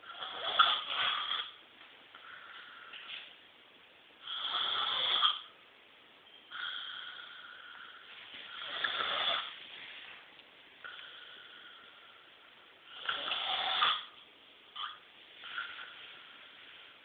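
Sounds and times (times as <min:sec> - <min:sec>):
person snoring: 0:04.2 - 0:05.5, 0:06.5 - 0:09.6, 0:12.9 - 0:14.1.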